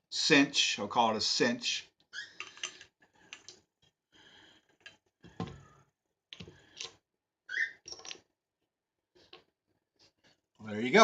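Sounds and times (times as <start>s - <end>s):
brief squeak: 7.5s - 8.1s.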